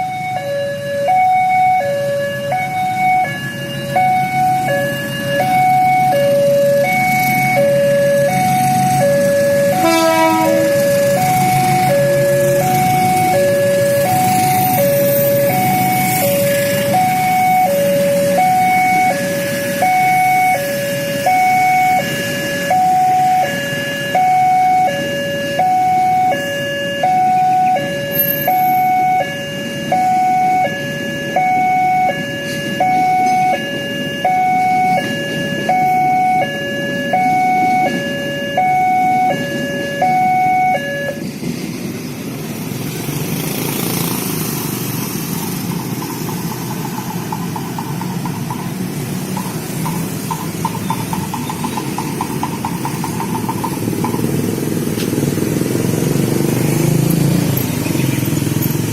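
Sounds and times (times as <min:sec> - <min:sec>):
two-tone warning siren: 0:00.0 - 0:41.4, 0:42.6 - 0:58.9.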